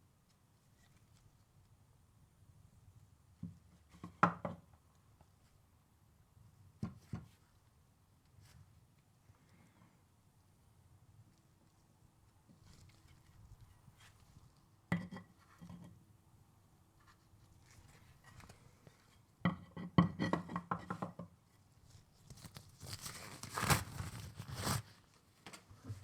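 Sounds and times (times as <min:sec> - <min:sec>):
rustling and rubbing: 0:17.0 - 0:19.2, 0:21.8 - 0:26.0.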